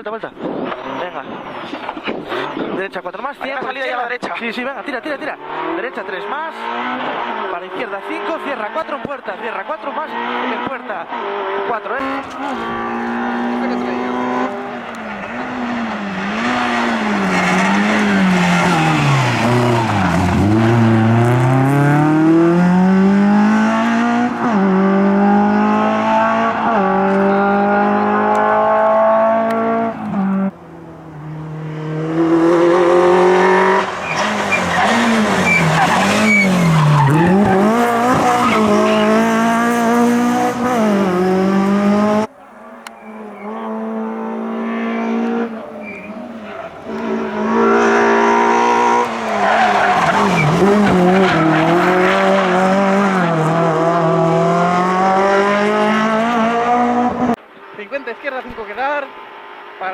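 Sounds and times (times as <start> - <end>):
rally car engine revving: 5.0 - 57.4
tyres squealing: 12.0 - 21.8, 33.1 - 41.1, 42.2 - 53.4.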